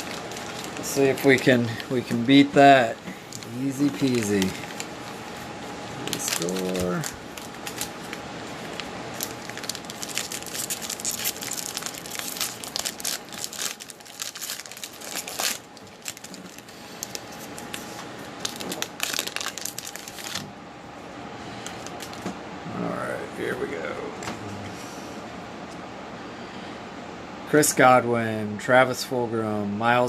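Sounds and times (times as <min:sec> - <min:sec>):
foil wrapper crinkling and tearing: 0:00.0 - 0:20.5, 0:21.6 - 0:22.2.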